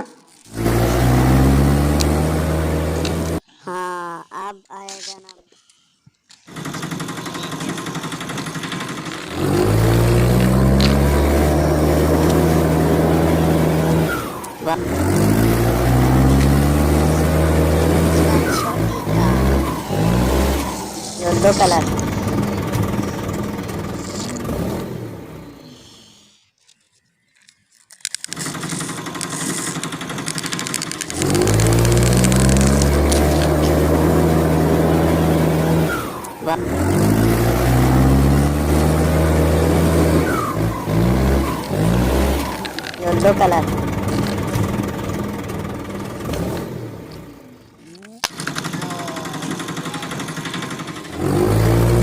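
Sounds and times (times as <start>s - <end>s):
steady engine running: 0.0s - 3.4s, 6.5s - 25.6s, 28.2s - 52.0s
buzzy rattle: 6.3s - 11.6s, 17.0s - 24.8s, 26.6s - 33.8s, 47.6s - 52.0s.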